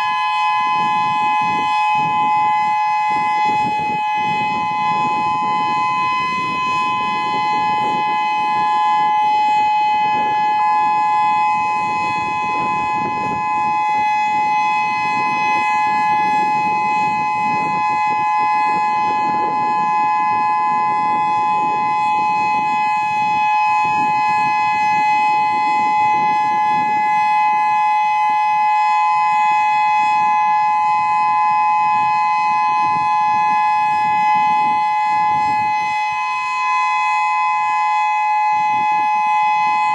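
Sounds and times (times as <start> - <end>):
electronic warning siren steady tone: 0.0 - 39.9.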